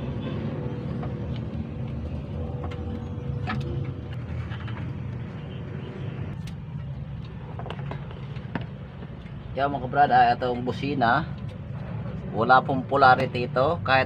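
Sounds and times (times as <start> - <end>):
low mechanical drone: 0.0 - 9.6.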